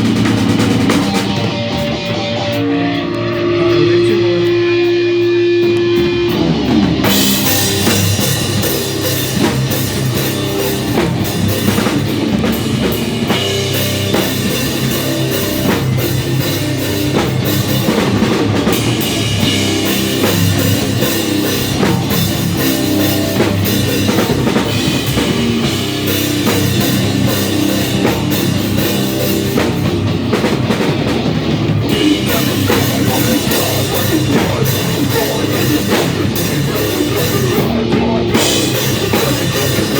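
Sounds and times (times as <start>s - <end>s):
live rock band playing: 0.0s - 39.9s
held guitar note: 1.3s - 6.8s.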